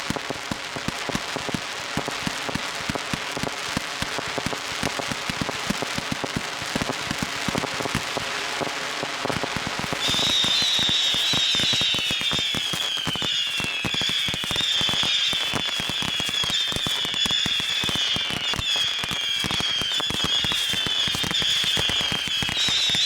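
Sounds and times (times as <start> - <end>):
fireworks crackling: 0.0 - 23.0
high whistles sliding down: 9.8 - 23.0.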